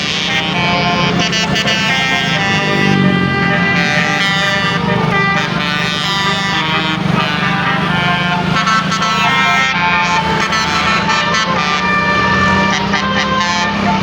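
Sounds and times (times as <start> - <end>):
multi-tone musical bus horn: 0.0 - 14.0.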